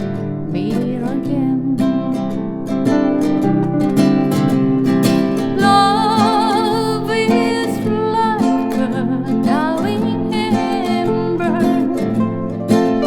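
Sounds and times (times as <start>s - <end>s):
acoustic guitar: 0.0s - 13.0s
woman singing a slow ballad: 0.4s - 2.3s, 5.4s - 12.6s.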